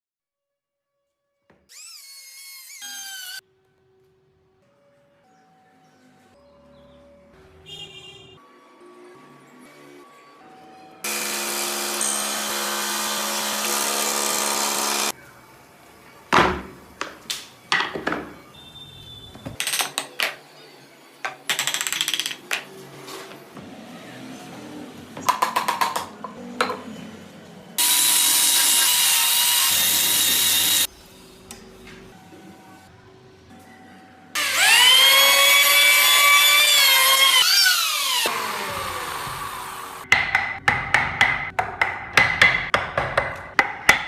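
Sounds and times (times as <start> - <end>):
higher-pitched power tool: 11.0 - 15.1, 27.8 - 30.9, 34.4 - 40.0
power tool motor running: 11.0 - 15.1, 27.8 - 30.9, 34.4 - 40.0.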